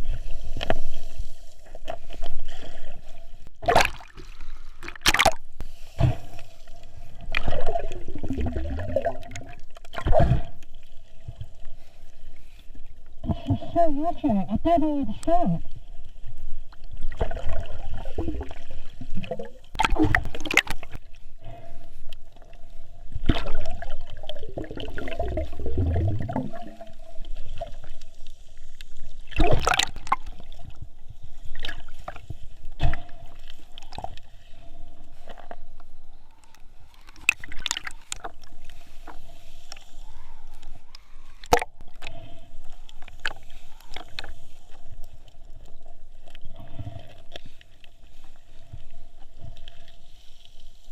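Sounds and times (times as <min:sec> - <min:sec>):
seawater gurgling and sloshing: 0:00.0 - 0:50.9
knocks and splashes: 0:03.6 - 0:05.4, 0:19.3 - 0:21.0, 0:29.3 - 0:30.3.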